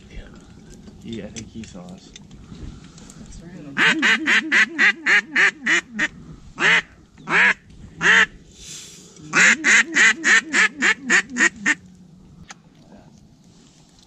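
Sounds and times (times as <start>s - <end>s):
duck quacking: 3.8s - 8.3s, 9.3s - 11.8s.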